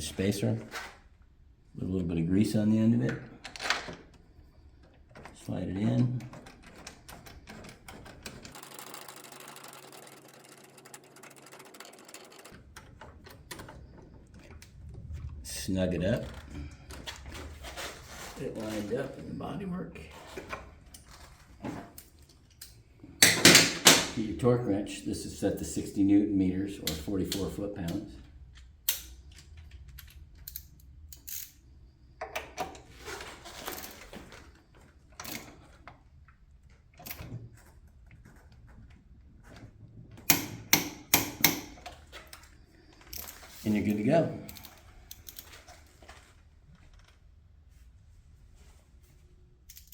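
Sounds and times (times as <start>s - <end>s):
hand tool ratcheting clicks: 40.3s - 41.8s.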